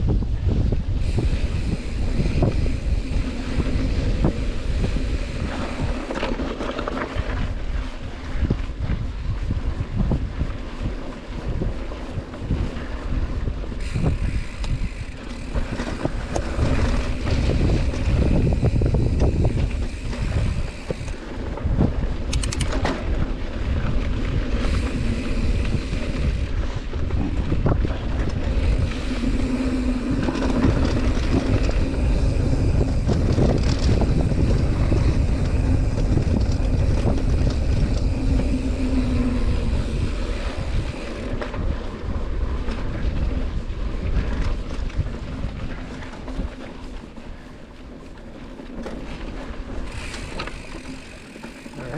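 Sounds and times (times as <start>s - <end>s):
bike rattling and knocking: 0.0s - 51.9s
wind buffeting microphone: 0.0s - 51.9s
steady hum: 28.2s - 41.4s.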